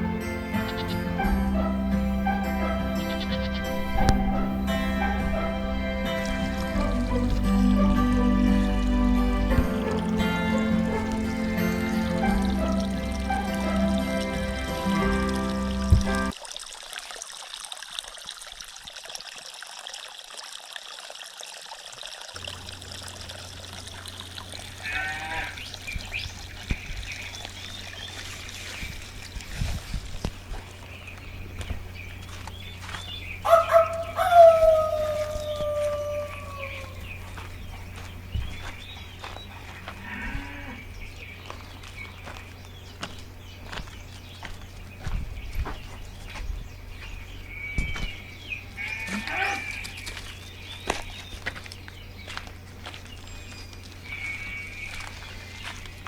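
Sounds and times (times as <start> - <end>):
livestock call: 0.0 - 16.3, 24.7 - 25.9, 33.4 - 37.1, 48.6 - 50.2, 54.0 - 55.8
steady low hum: 0.0 - 16.3
theme music: 0.0 - 16.3
water trickling: 0.0 - 56.0.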